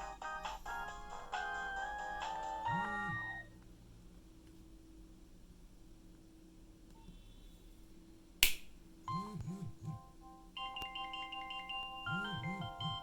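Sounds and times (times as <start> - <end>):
electronic ringtone melody: 0.0 - 3.5, 10.6 - 13.0
loud sharp click: 8.4 - 8.8.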